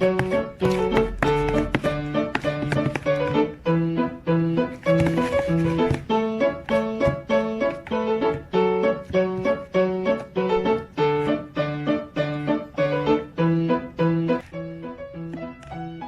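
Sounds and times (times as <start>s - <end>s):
piano melody: 0.0s - 16.0s.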